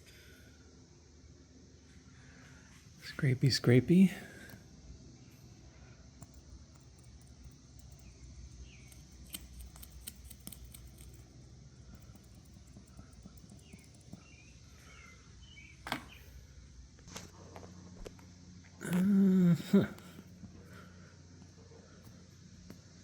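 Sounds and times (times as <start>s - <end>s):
small tool scraping glass: 8.7s - 11.2s.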